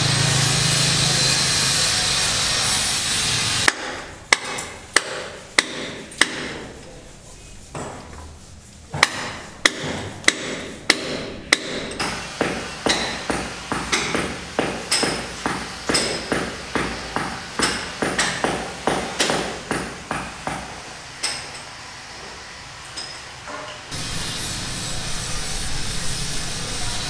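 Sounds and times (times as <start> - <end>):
power tool running: 0.0 - 3.7, 23.9 - 27.0.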